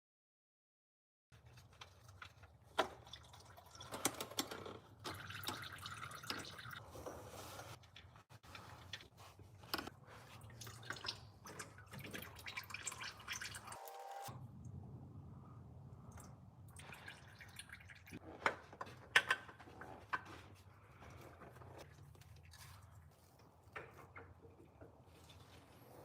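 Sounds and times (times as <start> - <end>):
oil running and dripping: 1.4 - 6.8, 10.0 - 14.3, 16.1 - 18.2.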